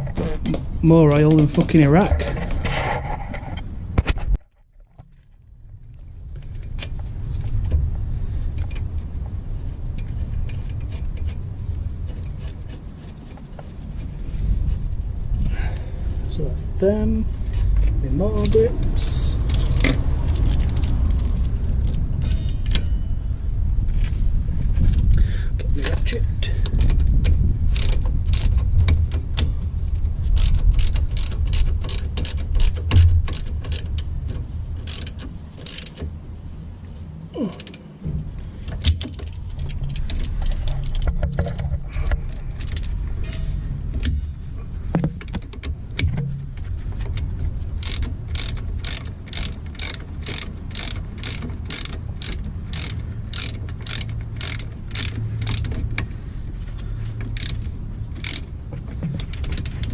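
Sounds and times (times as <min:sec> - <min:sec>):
hand ratchet clicking: 0:17.6 - 0:23.0, 0:25.8 - 0:29.5, 0:30.4 - 0:36.0, 0:38.8 - 0:44.2, 0:47.0 - 0:56.2, 0:57.2 - 0:59.9.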